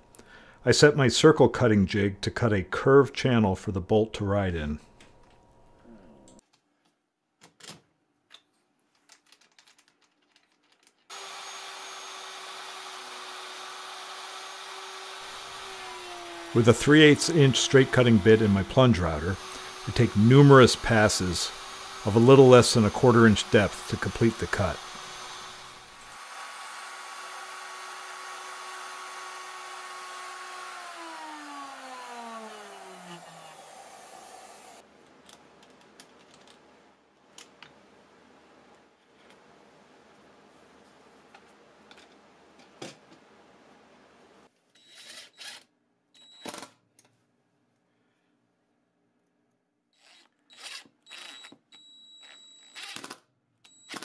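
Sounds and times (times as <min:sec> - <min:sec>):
router running: 0:11.1 - 0:34.8, 0:50.0 - 0:51.6.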